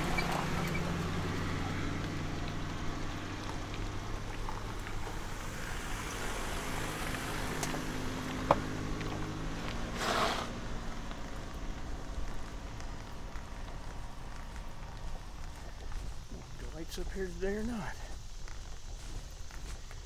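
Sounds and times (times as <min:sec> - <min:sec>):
car engine humming: 0:00.0 - 0:20.0.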